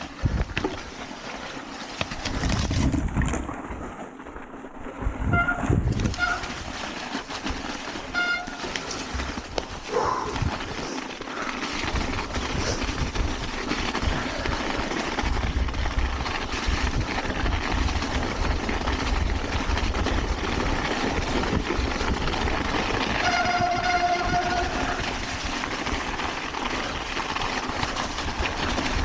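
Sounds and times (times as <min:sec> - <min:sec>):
wind rush on microphone: 0:00.0 - 0:00.8, 0:02.2 - 0:03.5, 0:05.0 - 0:06.8, 0:09.1 - 0:10.8, 0:11.8 - 0:25.7
tyres rumbling over trail: 0:00.0 - 0:29.0.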